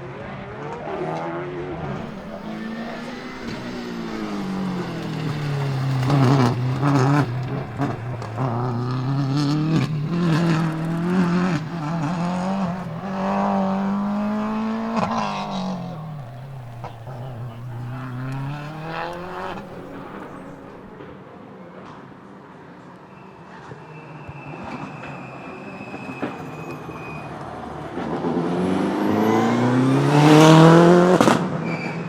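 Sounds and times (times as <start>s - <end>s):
rally car engine revving: 1.8s - 21.0s, 28.0s - 31.6s
exhaust cracks: 1.9s - 21.0s.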